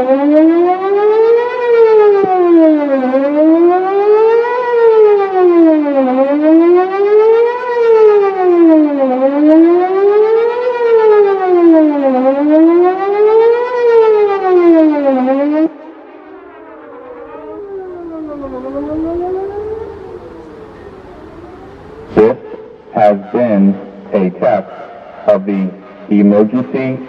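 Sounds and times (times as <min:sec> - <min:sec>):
warning siren sweeping: 0:00.0 - 0:24.1
distant sirens sweeping: 0:00.0 - 0:27.0.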